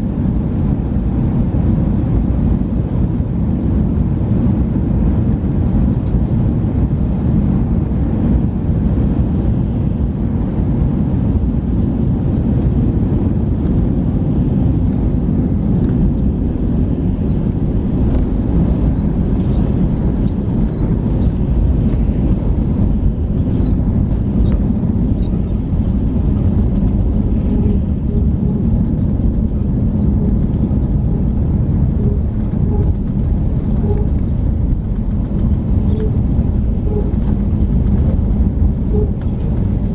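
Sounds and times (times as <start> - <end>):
aircraft cabin engine rumble: 0.0 - 39.9.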